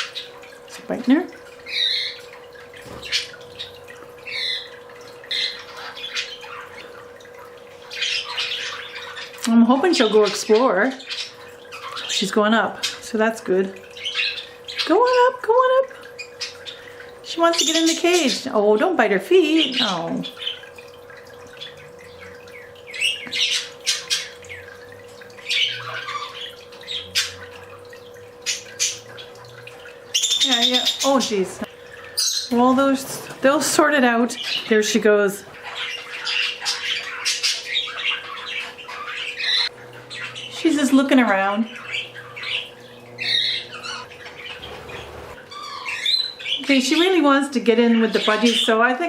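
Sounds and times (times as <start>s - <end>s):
faint steady hum: 0.0s - 49.0s
budgerigars squawking and chirping: 1.7s - 7.1s, 7.8s - 13.1s, 13.9s - 15.3s, 21.5s - 24.8s, 25.4s - 27.8s, 28.4s - 32.5s, 34.0s - 48.8s.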